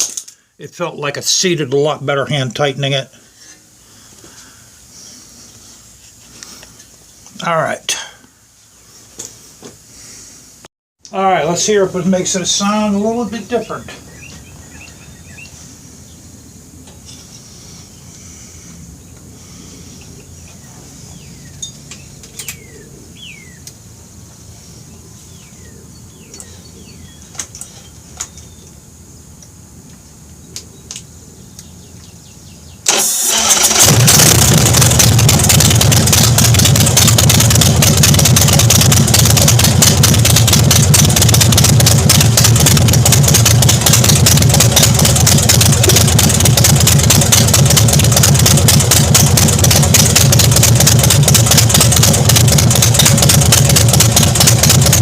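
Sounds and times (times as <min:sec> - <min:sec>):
motorcycle engine starting and idling: 0:32.8 - 0:55.0.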